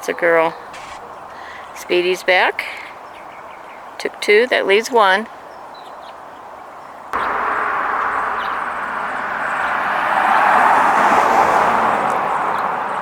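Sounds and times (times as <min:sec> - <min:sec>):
motor vehicle passing: 0:07.2 - 0:13.0.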